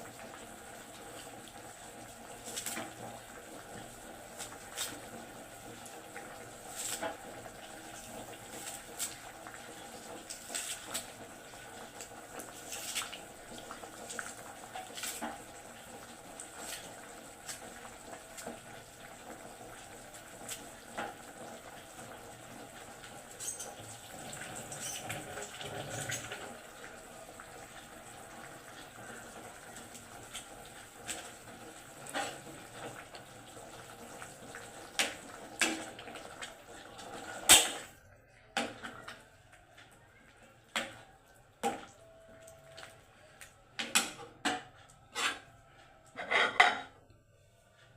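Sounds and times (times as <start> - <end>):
utensils clinking against pots: 23.3 - 23.8.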